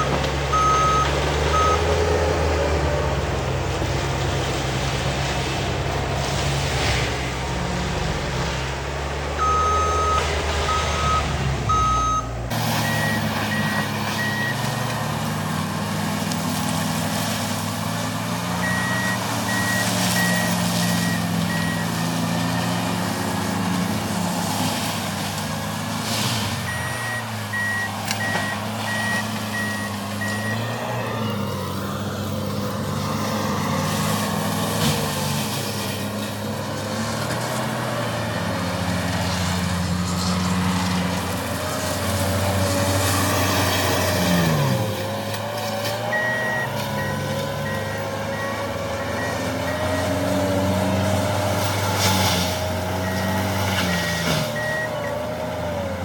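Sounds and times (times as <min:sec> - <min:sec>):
diesel engine running: 0:00.0 - 0:56.0
backup alarm beeping: 0:00.5 - 0:01.9, 0:09.4 - 0:15.2, 0:18.6 - 0:22.7, 0:26.7 - 0:30.8, 0:46.0 - 0:50.2, 0:53.0 - 0:55.3.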